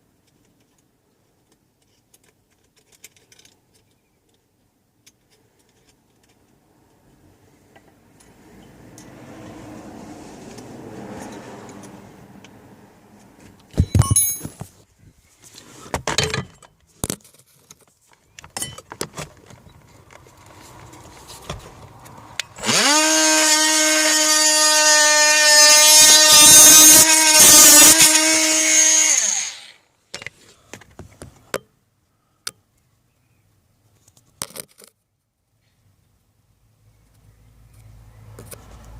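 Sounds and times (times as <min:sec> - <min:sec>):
handheld power tool running: 0:22.6 - 0:29.8.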